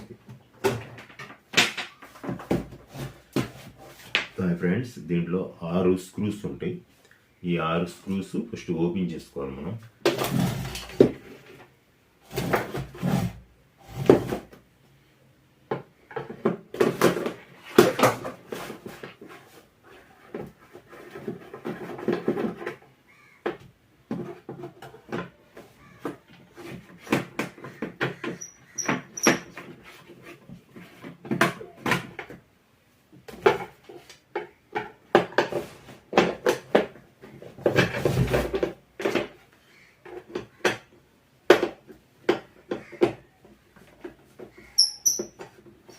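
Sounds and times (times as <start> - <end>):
brief high squeaks: 44.6 - 45.4
screwdriver clicking and scraping: 44.8 - 45.3.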